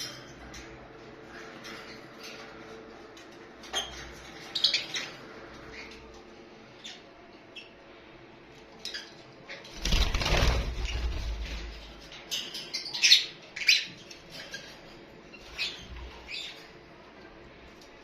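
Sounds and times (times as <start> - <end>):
birds flapping wings: 9.7 - 11.9.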